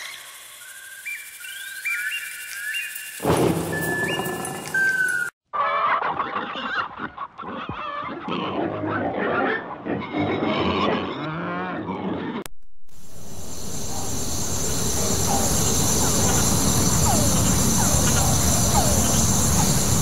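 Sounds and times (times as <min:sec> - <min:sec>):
outdoor noise with high hiss: 0:13.0 - 0:20.0
wavering animal calls: 0:13.8 - 0:20.0.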